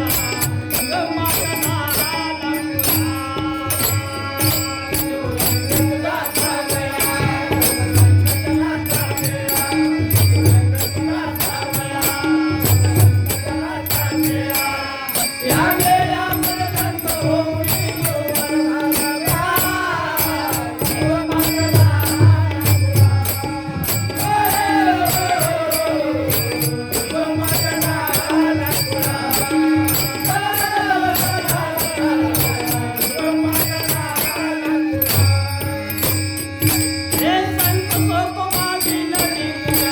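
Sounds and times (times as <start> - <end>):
man singing: 0.0 - 39.9
rhythmic beat with jingling percussion: 0.0 - 39.9.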